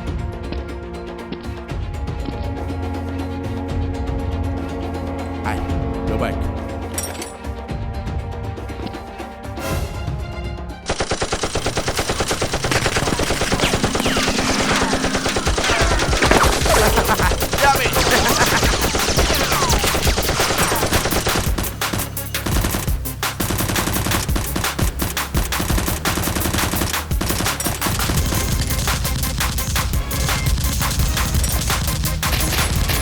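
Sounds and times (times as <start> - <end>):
automatic gunfire: 10.9 - 29.6.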